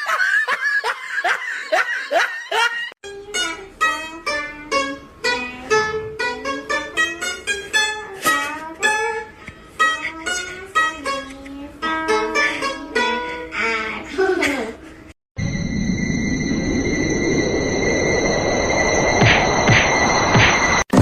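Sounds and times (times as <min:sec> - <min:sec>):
plucked string melody: 0:03.1 - 0:13.8.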